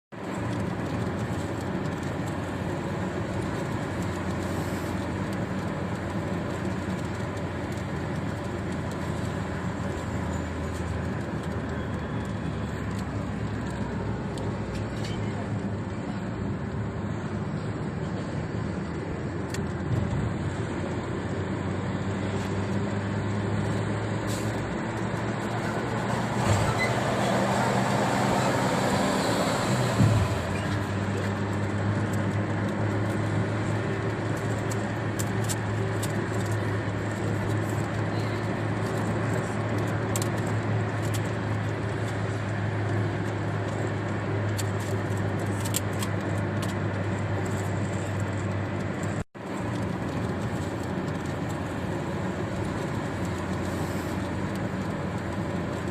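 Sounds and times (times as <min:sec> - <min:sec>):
car road and engine noise: 0:00.0 - 0:55.9
rain on windshield: 0:00.1 - 0:55.9.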